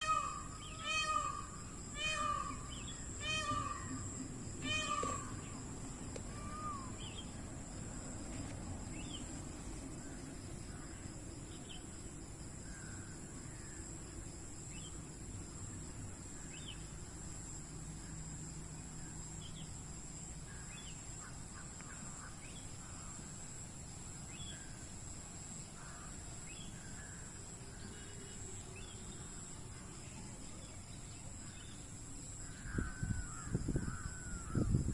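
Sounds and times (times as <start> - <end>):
peacock calling: 0.0 - 7.8
small birds chirping: 0.0 - 12.1.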